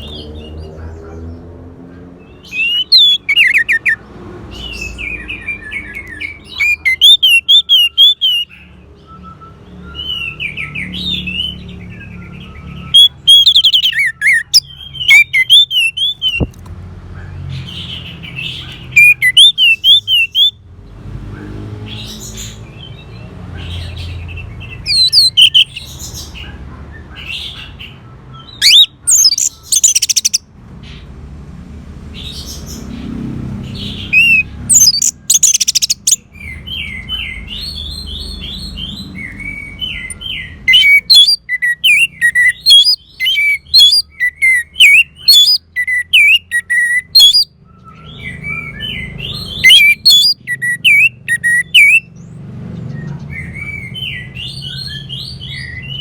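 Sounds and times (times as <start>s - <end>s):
thrush singing: 2.4s - 4.0s, 12.9s - 16.5s, 49.1s - 52.0s.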